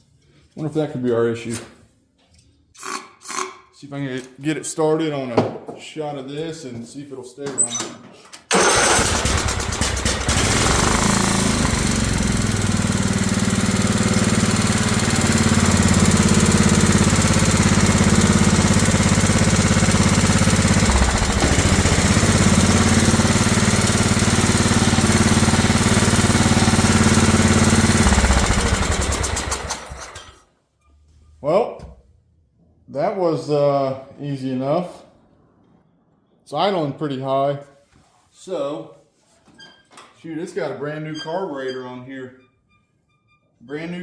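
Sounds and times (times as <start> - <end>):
mower engine starting and idling: 8.5 - 30.4.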